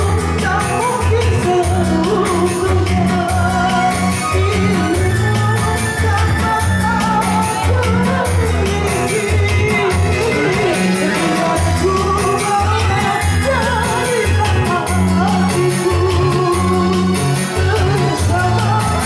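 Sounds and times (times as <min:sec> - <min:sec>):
backing music with beat: 0:00.0 - 0:19.0
person singing: 0:00.0 - 0:19.0.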